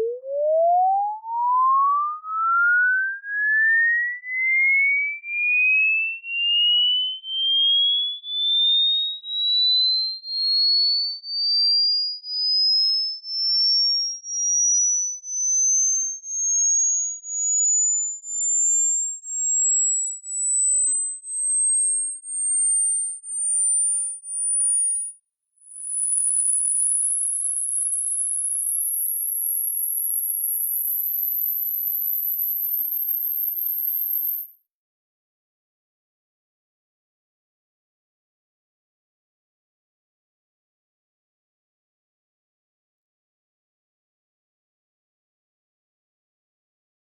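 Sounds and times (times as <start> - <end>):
electronic test tone beeping: 22.0 - 25.1.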